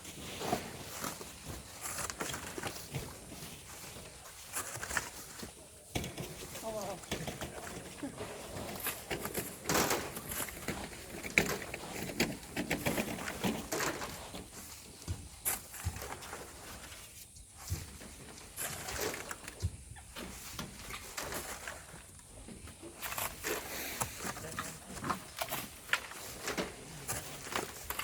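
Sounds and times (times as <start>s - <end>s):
hand tools scraping sand and stones: 0.0s - 19.5s, 22.7s - 28.0s.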